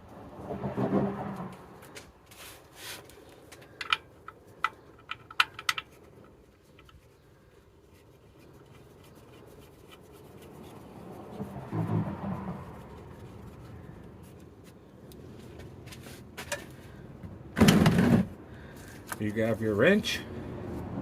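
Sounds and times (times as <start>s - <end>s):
low rumble: 0.0s - 1.9s.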